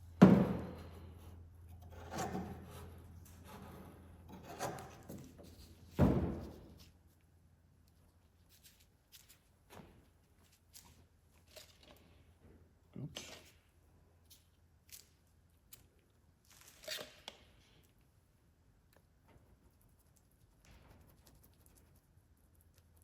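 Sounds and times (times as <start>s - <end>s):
loud knock: 0.2s - 0.8s.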